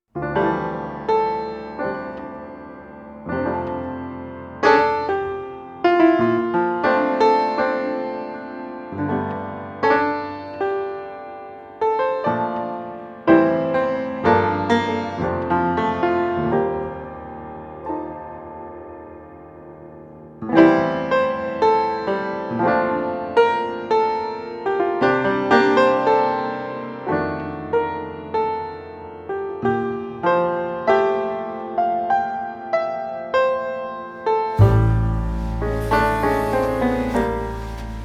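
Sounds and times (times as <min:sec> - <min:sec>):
solo piano music: 0:34.6 - 0:38.0.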